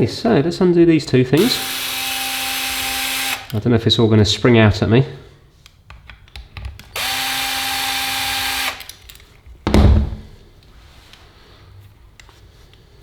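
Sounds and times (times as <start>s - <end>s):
power drill running: 1.4s - 3.5s, 7.0s - 8.9s
loud dull thump: 9.6s - 10.4s.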